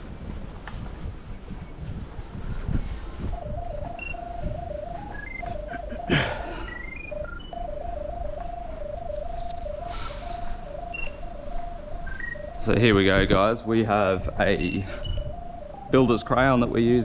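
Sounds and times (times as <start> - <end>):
short high beeps: 3.3 - 12.8, 13.6 - 16.1
warbling electronic tone: 3.3 - 16.8.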